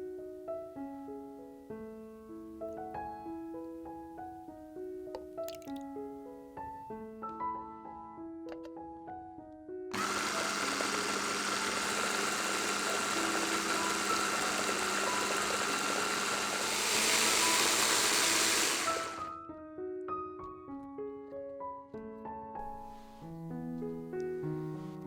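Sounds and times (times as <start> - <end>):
soft piano music: 0.0 - 9.9, 19.3 - 25.0
blender motor humming: 9.9 - 19.4.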